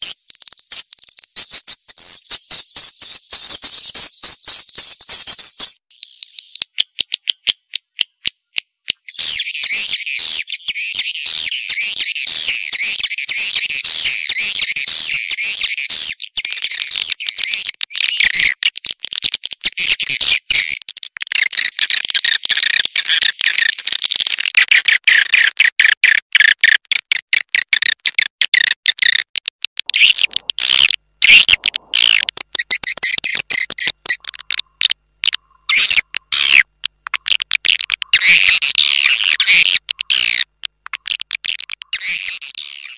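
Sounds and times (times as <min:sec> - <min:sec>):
swiftlets twittering and chirping: 0:00.0 - 0:07.0, 0:09.0 - 0:19.0, 0:29.8 - 0:42.9.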